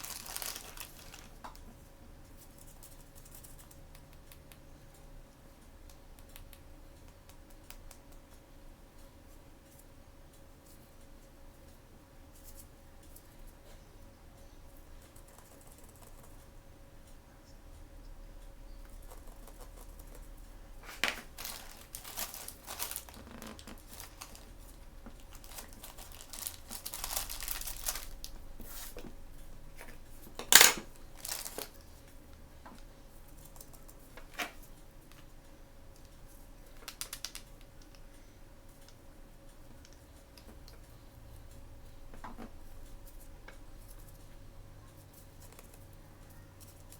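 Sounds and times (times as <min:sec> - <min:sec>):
plastic packaging crinkling: 0:00.0 - 0:01.6, 0:20.8 - 0:29.0, 0:30.4 - 0:31.8.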